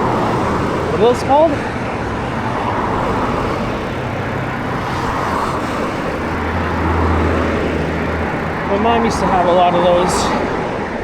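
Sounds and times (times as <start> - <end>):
street traffic noise: 0.0 - 11.0
vehicle engine hum: 0.0 - 11.0.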